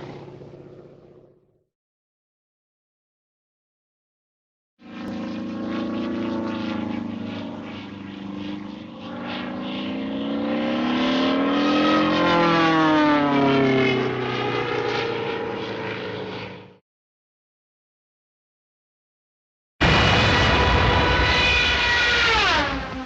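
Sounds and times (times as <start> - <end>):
cartoon engine drone: 4.8 - 16.8, 19.8 - 23.0.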